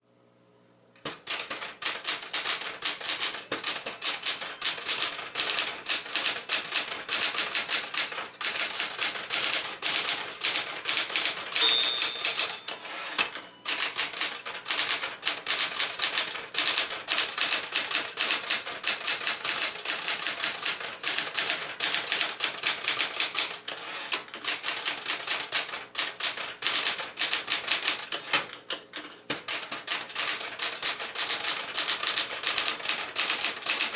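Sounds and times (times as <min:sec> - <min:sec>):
typewriter key strikes: 0:01.0 - 0:23.6, 0:29.3 - 0:33.9
typewriter margin bell ring: 0:11.1 - 0:15.6.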